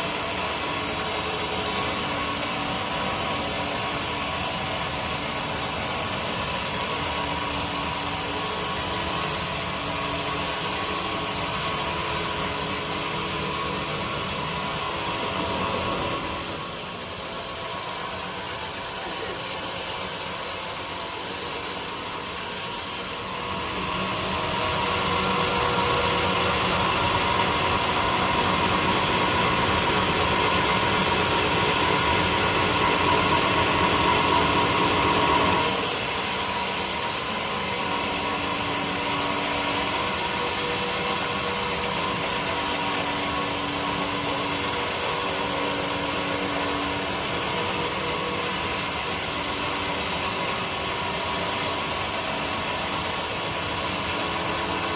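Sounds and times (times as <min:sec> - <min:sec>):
power tool rasping wood: 0:00.0 - 0:15.0, 0:15.8 - 0:23.3, 0:34.1 - 0:54.9.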